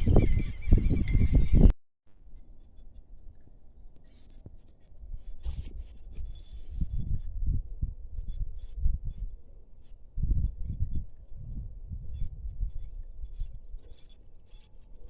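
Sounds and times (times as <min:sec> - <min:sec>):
wind buffeting microphone: 0:00.0 - 0:01.7, 0:05.2 - 0:09.4, 0:10.1 - 0:13.8.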